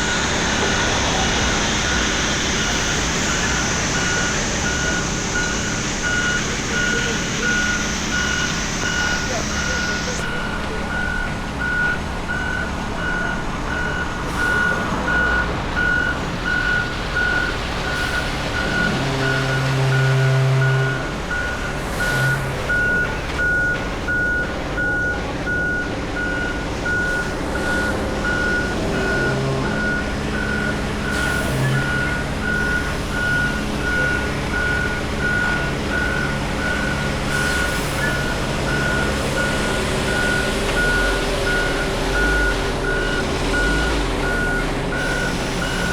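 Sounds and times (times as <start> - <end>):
reversing alarm beeping: 0.0 - 45.9
truck engine running: 0.0 - 45.9.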